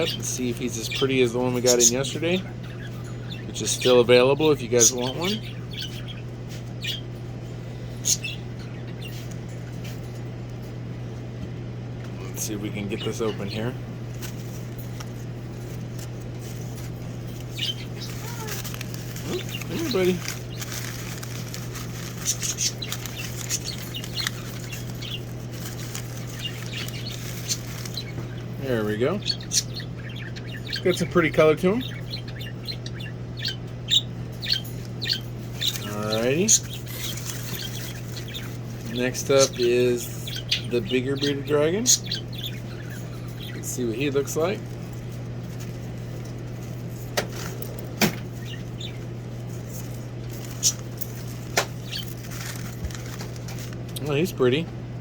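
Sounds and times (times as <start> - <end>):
steady low hum: 0.0 - 55.0
shipping box rustling: 14.2 - 28.1, 49.8 - 53.8.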